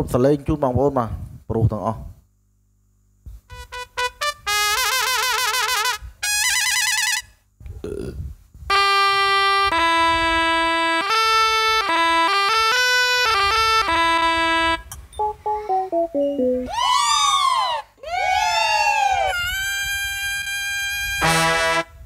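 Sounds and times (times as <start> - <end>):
synthesizer keyboard melody: 10.4 - 16.7.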